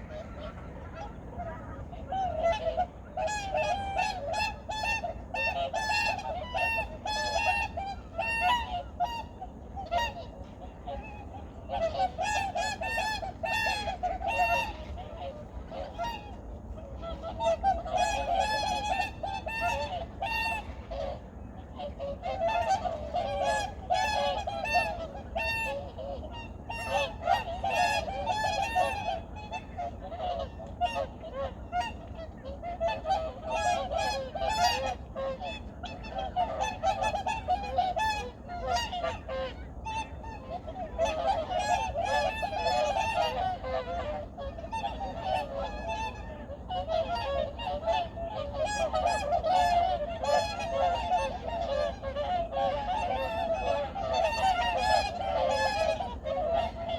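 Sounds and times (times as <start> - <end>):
flock of geese honking: 0.0 - 56.9.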